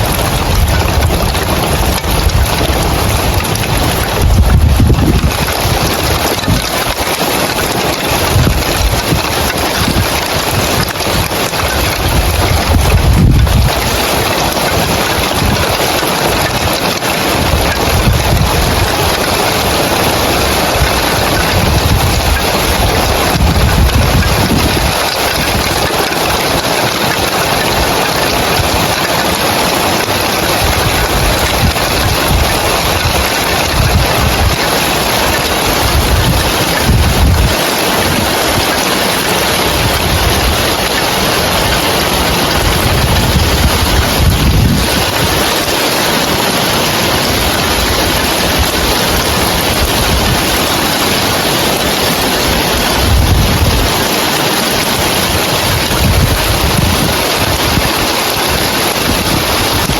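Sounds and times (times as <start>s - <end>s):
heavy rain on roof tiles: 0.0s - 59.9s
wind gusts on microphone: 0.0s - 59.9s.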